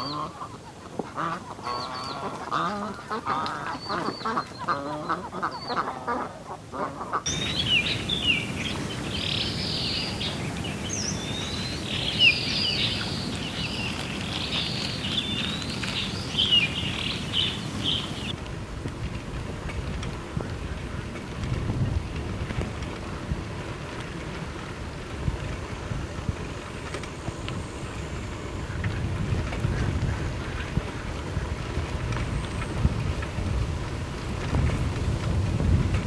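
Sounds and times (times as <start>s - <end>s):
ducks quacking: 0.0s - 18.3s
steady background noise: 7.2s - 36.0s
small birds chirping: 7.3s - 18.4s.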